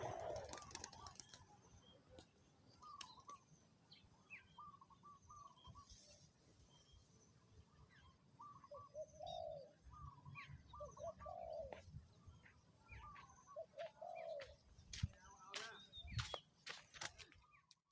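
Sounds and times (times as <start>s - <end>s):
dove cooing: 0.0s - 1.4s, 8.4s - 11.9s, 13.0s - 14.6s
small birds chirping: 0.0s - 17.9s.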